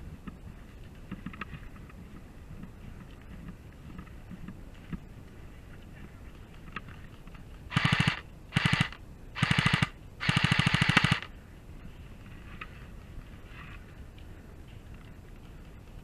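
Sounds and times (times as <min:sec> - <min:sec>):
airsoft gun firing bursts: 0:07.7 - 0:11.3.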